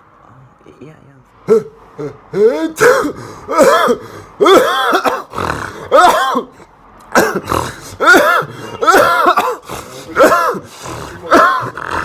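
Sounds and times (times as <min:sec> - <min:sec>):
person coughing: 0:01.5 - 0:12.0.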